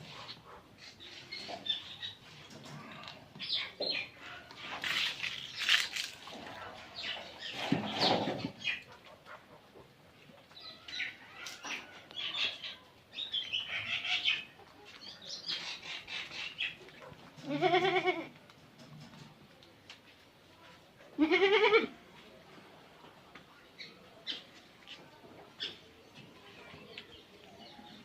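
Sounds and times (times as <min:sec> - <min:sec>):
chickens clucking: 0:06.3 - 0:17.6
goat bleating: 0:17.4 - 0:18.4, 0:21.2 - 0:22.0.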